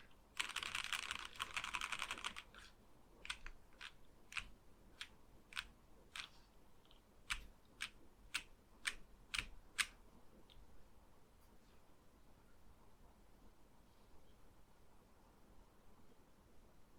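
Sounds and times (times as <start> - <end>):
mechanical keyboard keystrokes: 0.4 - 2.6, 3.2 - 6.3, 7.3 - 10.0.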